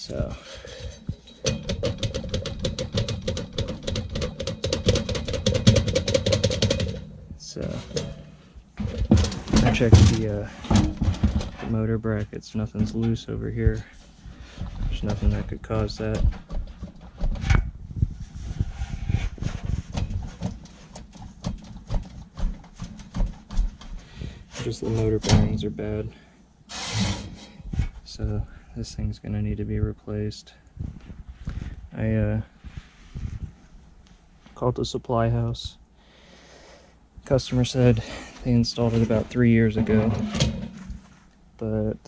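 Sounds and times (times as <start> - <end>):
blower assembly knocking and clunking: 0.1 - 11.8, 39.0 - 41.2
blower motor clicking and rattling: 0.8 - 7.1.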